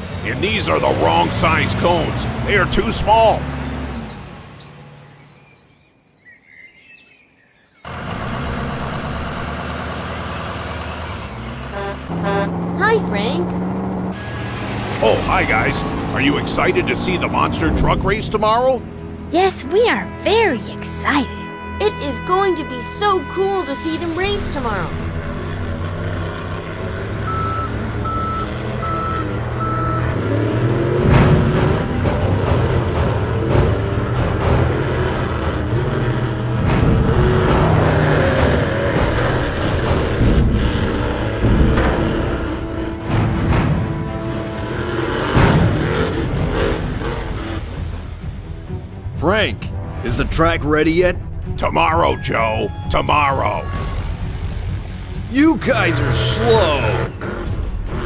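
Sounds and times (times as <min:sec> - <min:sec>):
vehicle engine running: 0:00.0 - 0:05.1, 0:07.8 - 0:58.0
birds chirping: 0:00.2 - 0:08.6
reversing alarm beeps: 0:27.2 - 0:30.2, 0:52.1 - 0:54.1.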